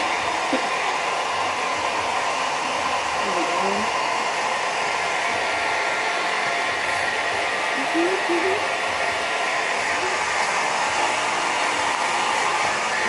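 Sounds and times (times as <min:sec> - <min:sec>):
hair dryer blowing: 0:00.0 - 0:13.0.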